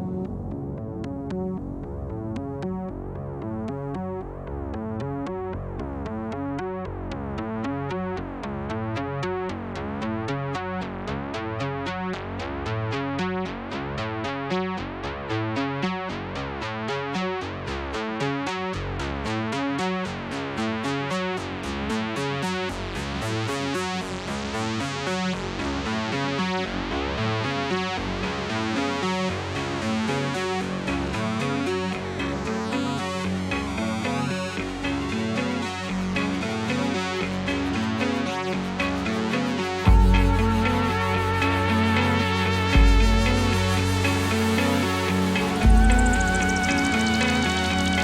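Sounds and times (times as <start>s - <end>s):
electronic synthesizer music: 28.4s - 48.0s.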